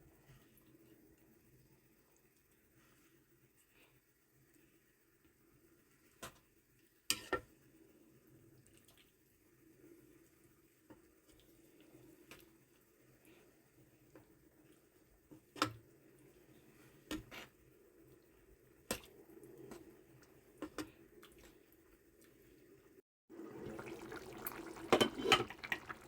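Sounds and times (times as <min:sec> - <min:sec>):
stew simmering and bubbling: 0:06.8 - 0:26.0
bubbles popping: 0:23.3 - 0:26.0.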